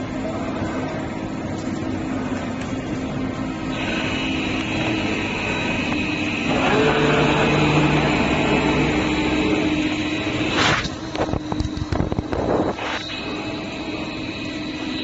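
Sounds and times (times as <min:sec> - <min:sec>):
lower hum: 0:00.0 - 0:15.0
cutting machine whining hum: 0:02.0 - 0:15.0.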